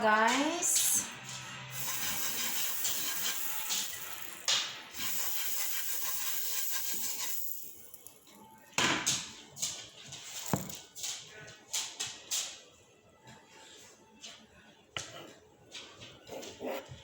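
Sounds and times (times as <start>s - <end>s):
batter sizzling in a hot pan: 5.0s - 7.5s.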